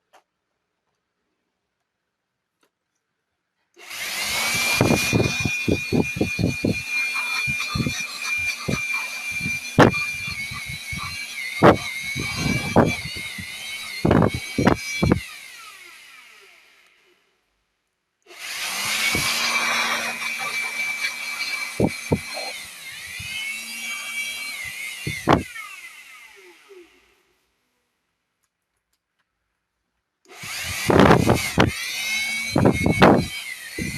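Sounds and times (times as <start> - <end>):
electric hand tool whining: 3.8 - 17.2, 18.3 - 27.3, 30.3 - 33.9.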